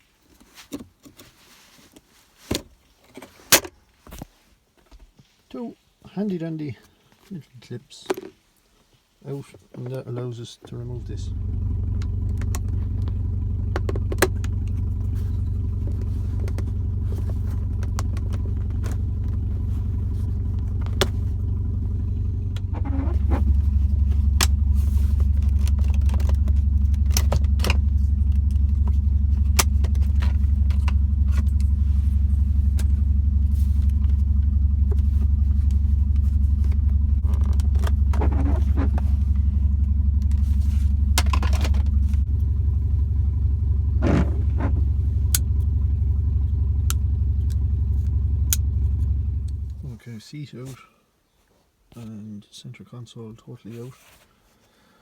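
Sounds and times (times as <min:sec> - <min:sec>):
steady low hum: 0:10.7 - 0:50.1.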